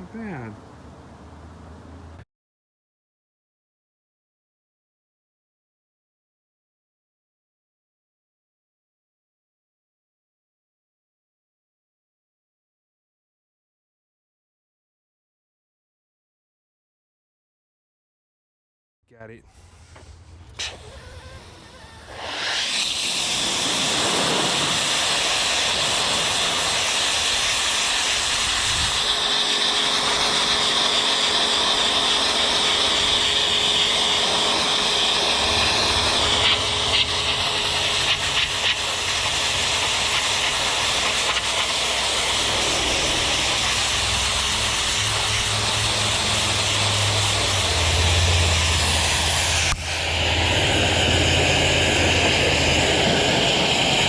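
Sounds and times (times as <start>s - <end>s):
electric motor and pump running: 19.5s - 54.0s
high-pressure water spray hiss: 19.6s - 54.0s.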